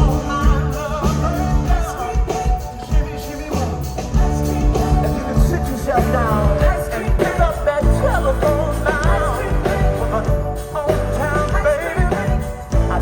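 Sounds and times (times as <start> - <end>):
live soul-rock band playing: 0.0 - 13.0
person singing: 0.0 - 13.0
steady bass line: 0.0 - 13.0.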